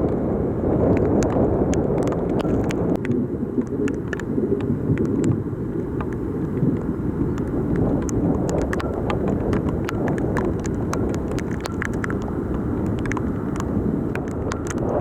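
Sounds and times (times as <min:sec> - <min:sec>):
heavy rain: 0:00.0 - 0:15.0
wind on microphone: 0:00.0 - 0:15.0.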